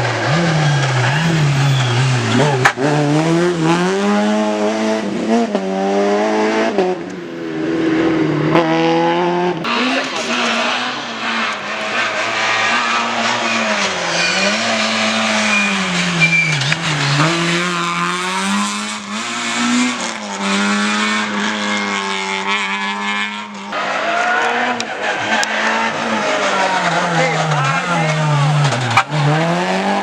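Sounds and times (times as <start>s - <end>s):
rally car engine revving: 0.0s - 30.0s.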